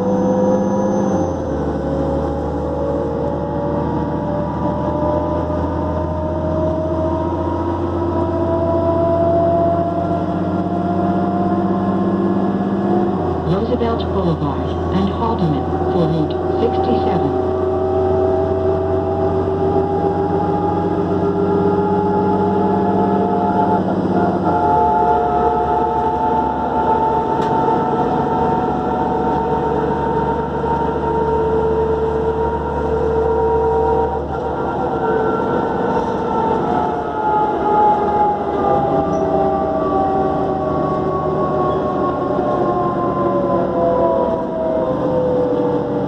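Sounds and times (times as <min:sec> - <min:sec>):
bus engine with turbocharger whine: 0:00.0 - 0:46.0.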